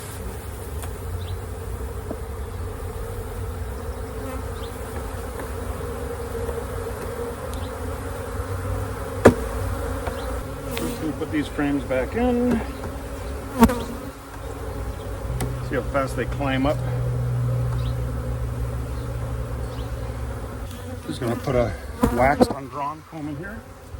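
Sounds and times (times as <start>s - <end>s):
honey bees buzzing: 0.0s - 23.9s
sharp knock: 9.2s - 9.6s.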